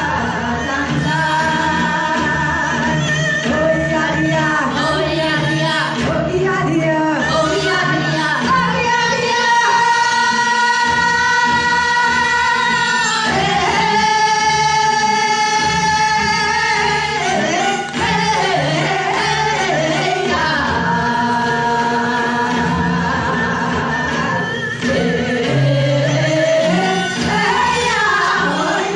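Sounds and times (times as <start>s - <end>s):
music: 0.0s - 28.9s.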